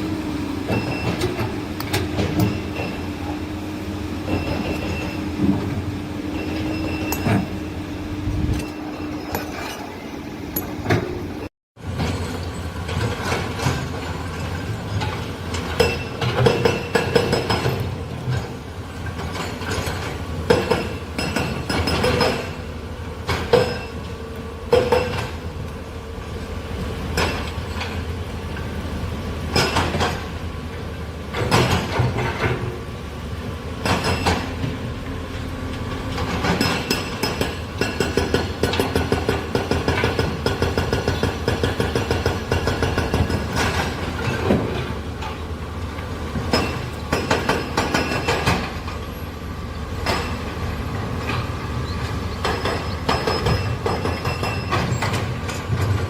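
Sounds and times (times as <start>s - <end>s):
heavy machinery engine rumble: 0.0s - 56.0s
metallic clanks and knocks: 29.5s - 30.3s, 33.8s - 35.1s, 35.7s - 45.4s, 51.2s - 56.0s.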